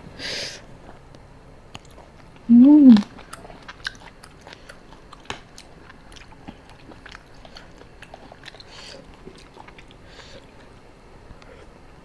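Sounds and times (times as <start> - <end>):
close chewing: 0.7 - 11.8
wet mouth clicks: 1.8 - 5.4.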